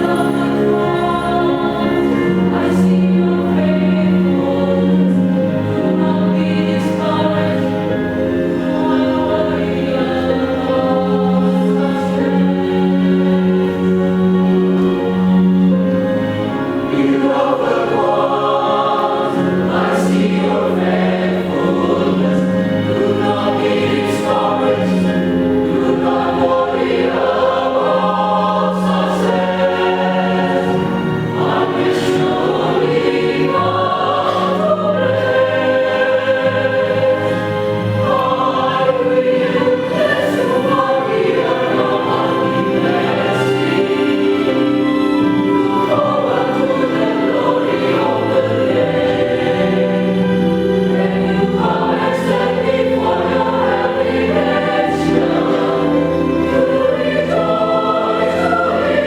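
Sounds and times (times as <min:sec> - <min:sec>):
church choir singing: 0:00.0 - 0:59.0.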